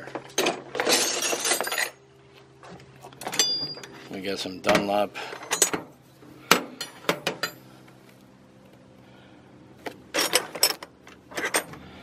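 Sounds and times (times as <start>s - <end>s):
metal wrenches clinking: 0.2s - 2.0s, 3.2s - 4.0s, 4.7s - 5.9s, 10.1s - 11.7s.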